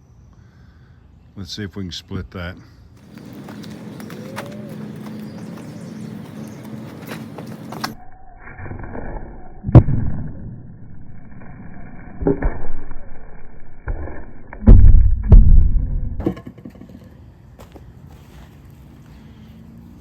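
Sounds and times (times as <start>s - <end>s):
heavy wooden knocks and thuds: 14.6s - 16.7s.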